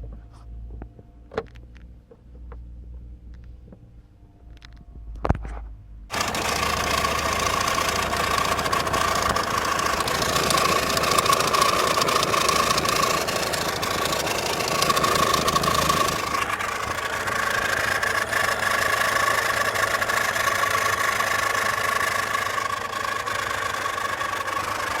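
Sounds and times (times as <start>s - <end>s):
engine running rough with knock: 6.1s - 25.0s.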